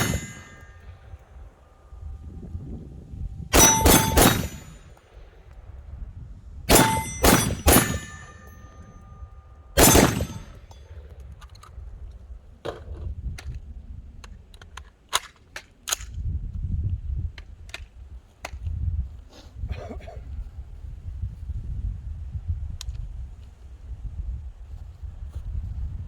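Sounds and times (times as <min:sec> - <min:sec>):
gunshots: 0:00.0 - 0:00.8, 0:03.5 - 0:04.8, 0:06.7 - 0:08.7, 0:09.8 - 0:10.8
metallic ringing of steel target: 0:00.0 - 0:01.6, 0:03.5 - 0:05.0, 0:06.7 - 0:11.1.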